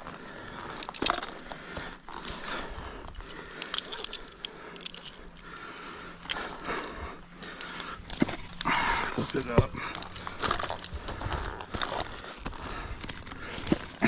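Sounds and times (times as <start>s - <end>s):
heavy breathing: 0.0s - 14.0s
spikes scraping and clicking on bark: 0.1s - 14.0s
rope hardware jangling against tree: 0.4s - 14.0s.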